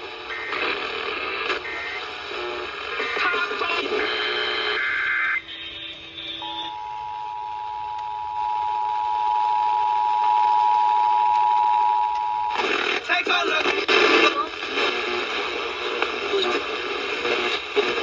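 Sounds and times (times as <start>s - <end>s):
radio broadcast: 0.0s - 6.8s, 12.5s - 18.0s
two-tone alert signal: 5.2s - 8.0s.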